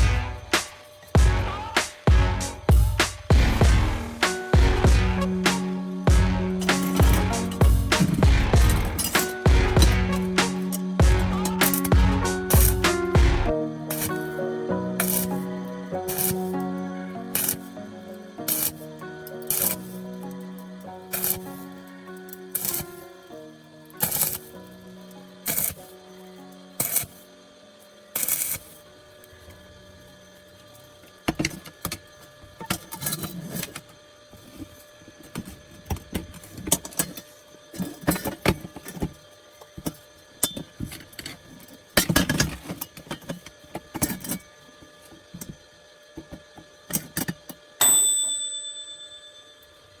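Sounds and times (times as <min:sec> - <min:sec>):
bright metallic ring: 0:47.8 - 0:50.0.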